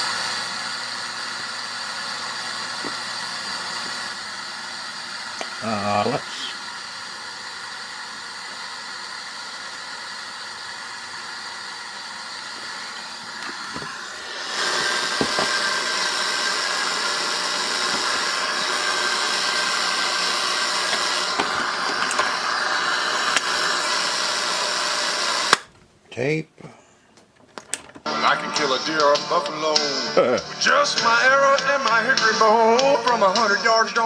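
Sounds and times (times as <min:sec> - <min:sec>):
radio static hiss: 0:05.2 - 0:13.9.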